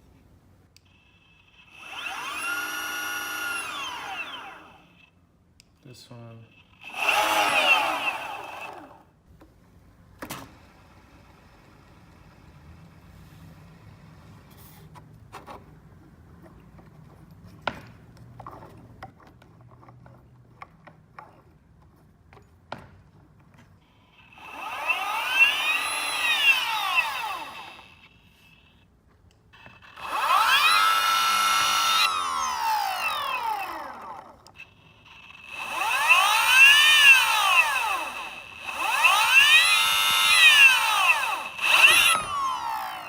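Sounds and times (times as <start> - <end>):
electric motor whine: 1.5 - 5.1, 6.8 - 9.1, 24.2 - 28.1, 29.8 - 43.0
sharp motor clicks: 1.6 - 5.1, 6.6 - 9.1, 24.2 - 28.2, 29.8 - 43.0.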